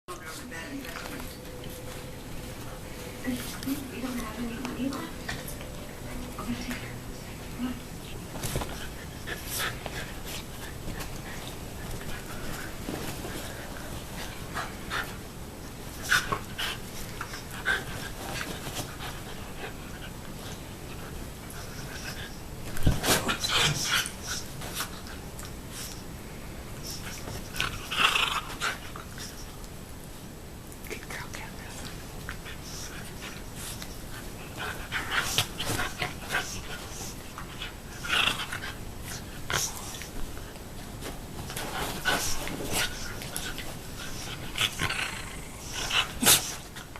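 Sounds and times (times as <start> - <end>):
dogs panting: 7.5 - 25.2, 31.8 - 46.9.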